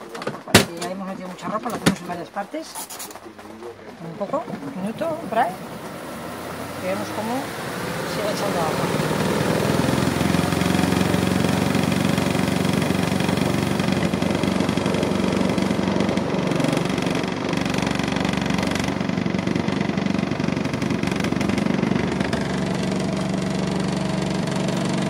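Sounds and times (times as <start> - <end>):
spin-dryer motor humming: 3.5 - 25.0.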